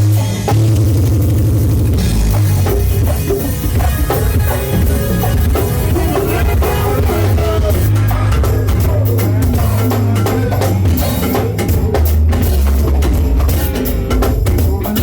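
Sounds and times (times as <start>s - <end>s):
drum kit and percussion: 0.0s - 15.0s
funk band playing: 0.0s - 15.0s
heavy bass line: 0.0s - 15.0s.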